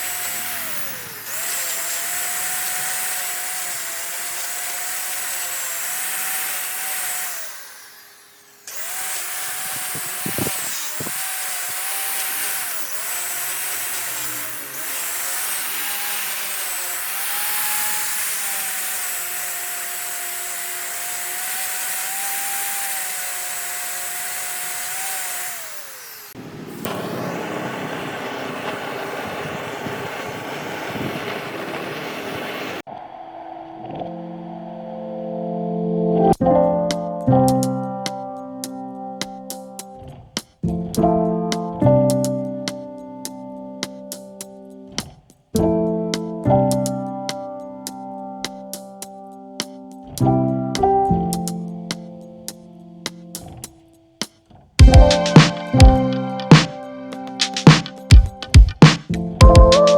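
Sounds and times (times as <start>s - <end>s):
power tool whining into wood: 0.0s - 32.8s
rough mechanical noise: 0.0s - 32.9s.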